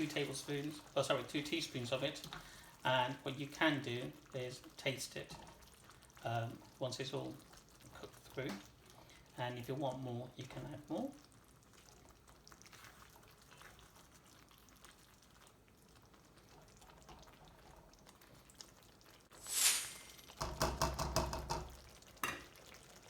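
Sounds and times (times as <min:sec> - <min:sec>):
curry simmering in a pan: 0:00.0 - 0:23.0
spoon scraping and stirring in a pan: 0:04.6 - 0:06.8.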